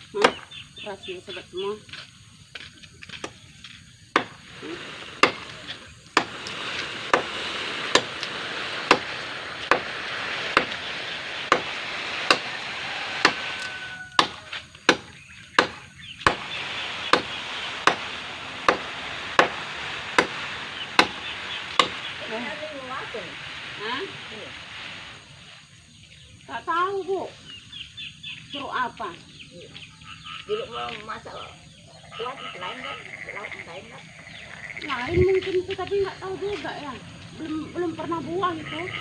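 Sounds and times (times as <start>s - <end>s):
blade chopping wood: 4.2s - 4.4s, 5.2s - 6.5s, 7.1s - 10.9s, 11.5s - 19.6s, 20.2s - 20.4s, 21.0s - 22.1s.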